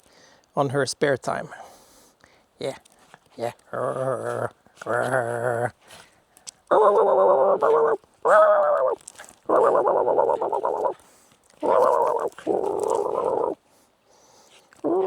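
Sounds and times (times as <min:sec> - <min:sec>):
dog grumbling: 0:03.7 - 0:05.8, 0:06.7 - 0:11.0, 0:11.6 - 0:13.6.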